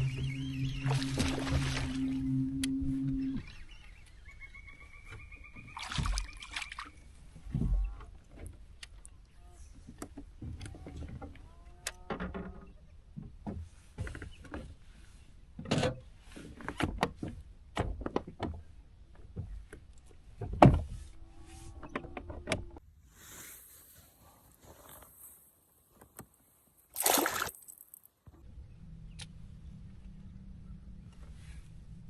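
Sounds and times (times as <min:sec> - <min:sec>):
knocks and clunks on a kayak: 0:05.0 - 0:06.6, 0:07.2 - 0:08.8, 0:09.7 - 0:14.8, 0:15.5 - 0:21.0.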